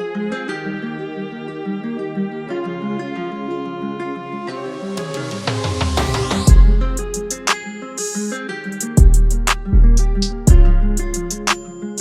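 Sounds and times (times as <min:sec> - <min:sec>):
plucked guitar-like notes: 0:00.0 - 0:12.0
beat with heavy bass drum: 0:06.0 - 0:07.6, 0:08.9 - 0:11.7.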